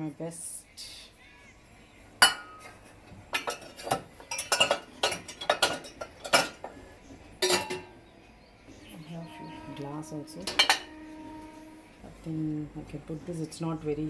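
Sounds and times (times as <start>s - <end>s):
metal dishes clattering: 2.2s - 8.0s, 9.4s - 11.7s.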